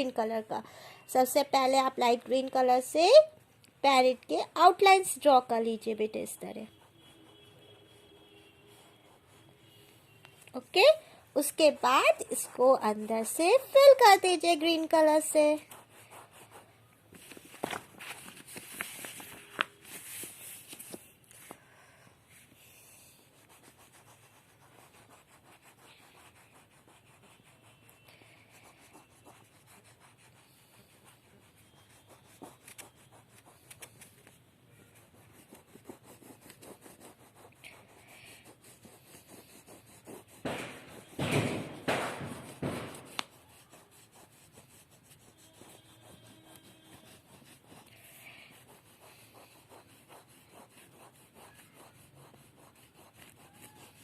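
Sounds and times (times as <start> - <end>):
crayon rubbing on paper: 4.4 - 16.9, 22.3 - 34.0, 34.8 - 41.2, 42.2 - 54.0.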